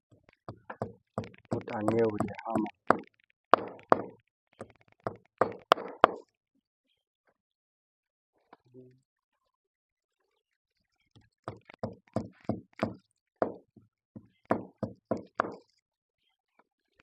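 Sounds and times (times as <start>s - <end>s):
hammer striking nail: 0.6s - 4.1s, 5.1s - 6.2s, 14.5s - 15.6s.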